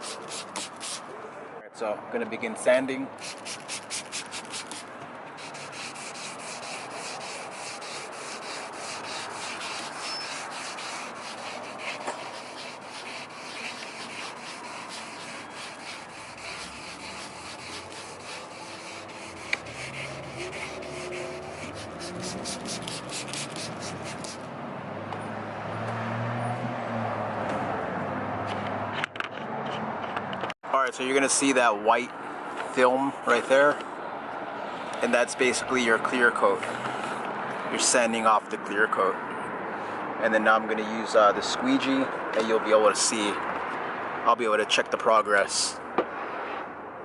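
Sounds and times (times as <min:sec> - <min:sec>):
sandpaper scrubbing painted metal: 0:00.0 - 0:01.1, 0:03.2 - 0:24.5.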